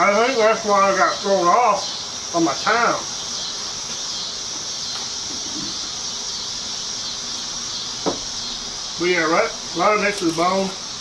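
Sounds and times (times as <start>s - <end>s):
high-pitched hiss: 0.0s - 11.0s.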